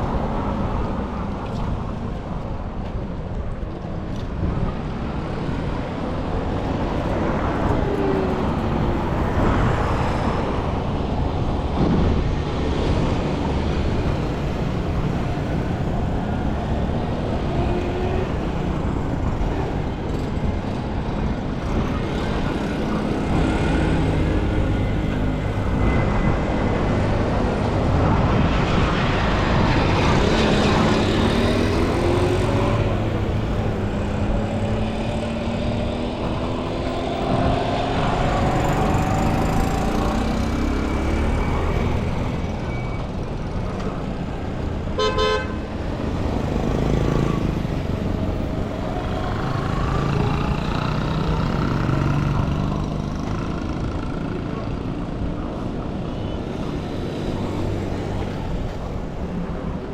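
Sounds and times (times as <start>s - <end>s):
vehicle engines passing: 0.0s - 59.9s
car horns tooting: 45.0s - 45.6s.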